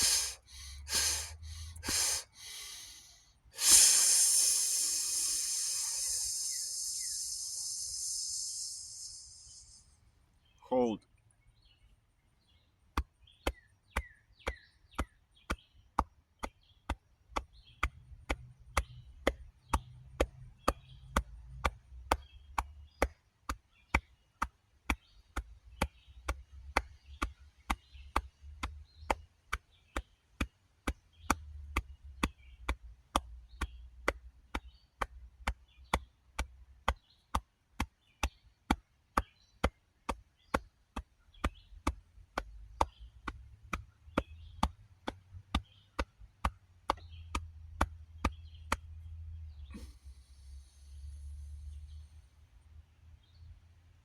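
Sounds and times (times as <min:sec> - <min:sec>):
faint high chirps: 0:03.6 - 0:11.0.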